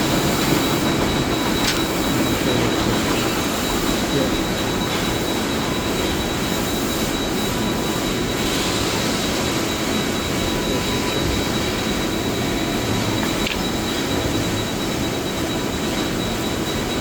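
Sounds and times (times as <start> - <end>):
industrial machinery drone: 0.0 - 17.0.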